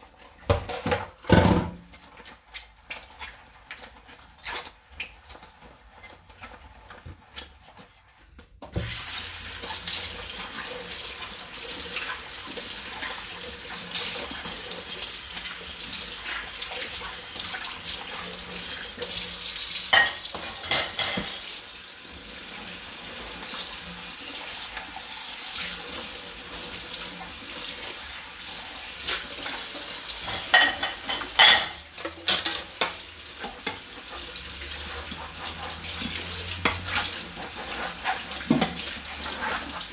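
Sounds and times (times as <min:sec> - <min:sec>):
dishes knocking against sink: 0:00.5 - 0:01.8
tap water running: 0:08.7 - 0:39.9
dishes clinking: 0:19.9 - 0:21.5, 0:30.2 - 0:33.0.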